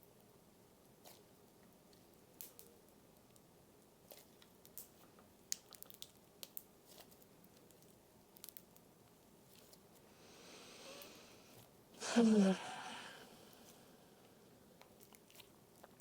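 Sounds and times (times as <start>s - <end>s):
slime crackling and popping: 0.9s - 9.8s.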